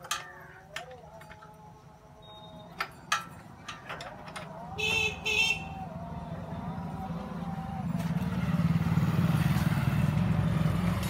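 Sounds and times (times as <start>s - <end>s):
tools clicking and knocking: 0.0s - 1.7s, 2.8s - 5.0s.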